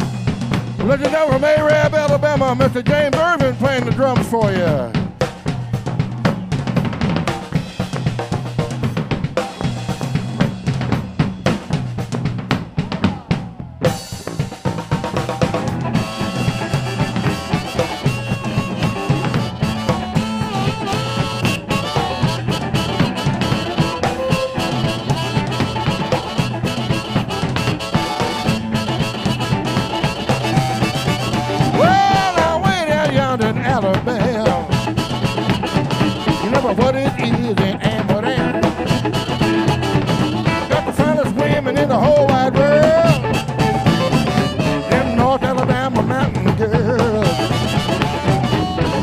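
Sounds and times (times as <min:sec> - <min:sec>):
bass line: 0:00.0 - 0:49.0
drum kit playing: 0:00.0 - 0:49.0
electric guitar: 0:00.0 - 0:49.0.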